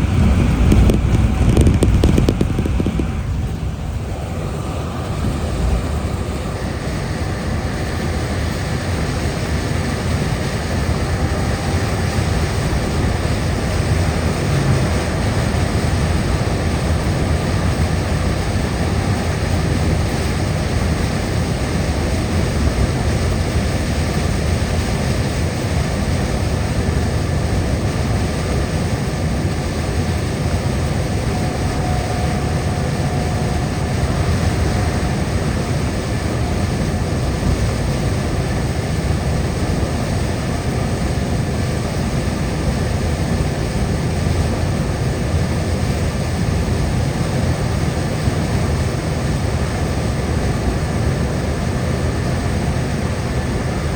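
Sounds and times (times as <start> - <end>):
tyre noise on wet road: 0.0 - 41.1.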